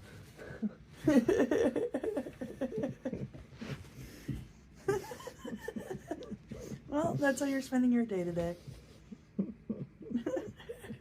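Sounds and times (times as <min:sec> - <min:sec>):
person laughing: 0:00.4 - 0:03.4, 0:04.8 - 0:06.8, 0:09.3 - 0:11.0.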